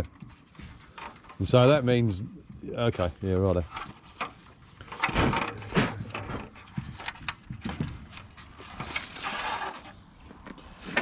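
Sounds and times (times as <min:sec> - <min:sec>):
wooden lid scraping: 0:03.5 - 0:11.0
wooden boxes knocking and clunking: 0:03.6 - 0:11.0.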